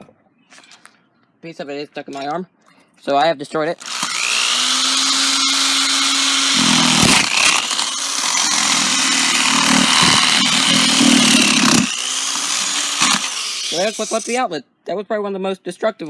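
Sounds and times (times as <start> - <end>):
cordless drill running: 3.8 - 14.4
drill grinding into outlet: 3.8 - 14.4.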